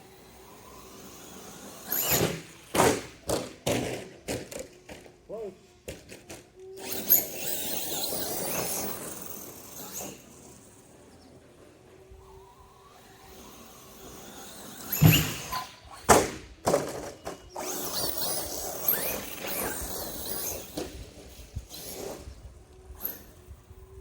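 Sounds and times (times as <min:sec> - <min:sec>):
truck clattering and scraping: 0:00.5 - 0:12.0, 0:13.0 - 0:22.3
toy truck landing thuds: 0:14.7 - 0:18.4.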